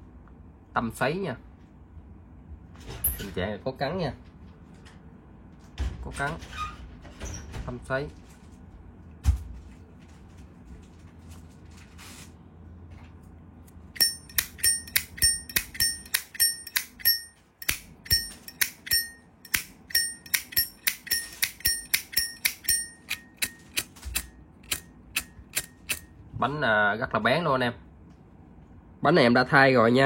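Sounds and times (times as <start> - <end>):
lighter lid clicking open and shut: 14.0 - 26.0.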